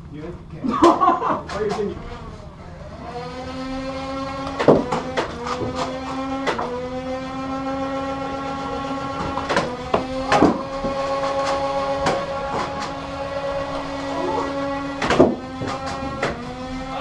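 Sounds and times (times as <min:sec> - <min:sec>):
flywheel motor whine: 0:01.0 - 0:17.0.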